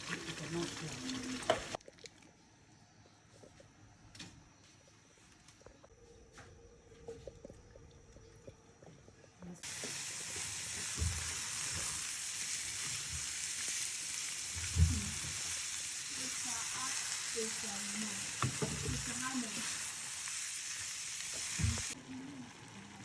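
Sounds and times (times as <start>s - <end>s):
food frying in oil: 0.0s - 1.8s, 9.6s - 23.0s.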